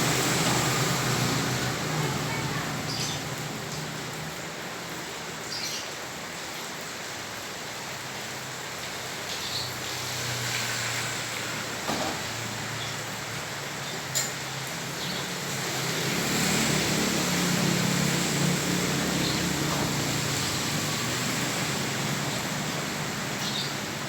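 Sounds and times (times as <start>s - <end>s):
vehicle engine hum: 0.0s - 4.2s
heavy rain on a flooded street: 0.0s - 24.0s.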